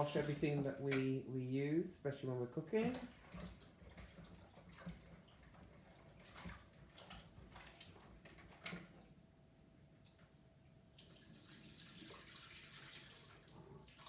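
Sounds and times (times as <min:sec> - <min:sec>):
water splashes: 0:00.0 - 0:01.1
water running in kitchen sink: 0:00.0 - 0:09.2, 0:10.9 - 0:14.0.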